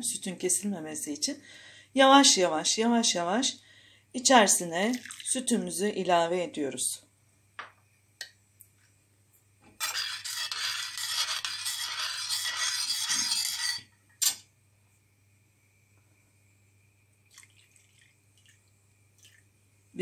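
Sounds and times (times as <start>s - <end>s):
milk pouring into tea: 4.9s - 5.4s, 17.2s - 19.6s.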